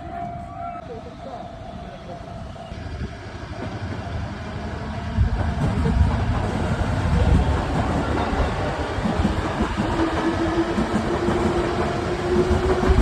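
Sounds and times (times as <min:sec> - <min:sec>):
train passing with low rumble: 0:00.0 - 0:13.0.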